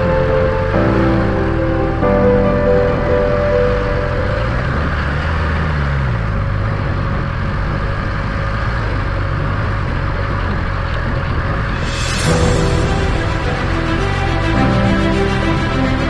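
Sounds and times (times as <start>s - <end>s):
wind noise on microphone: 4.1s - 16.0s
motorcycle engine running: 4.6s - 11.8s.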